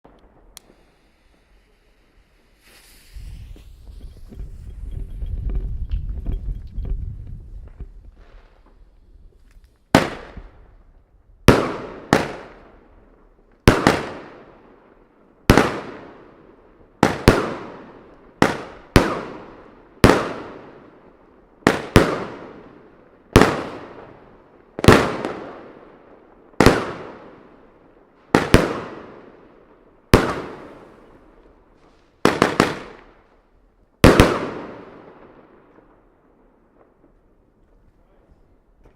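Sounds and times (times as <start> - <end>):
fireworks shots banging: 11.5 - 12.8, 13.6 - 14.6, 15.5 - 16.3, 17.0 - 21.0, 21.6 - 25.8, 26.6 - 27.6, 28.2 - 29.5, 30.1 - 33.2, 34.0 - 36.0.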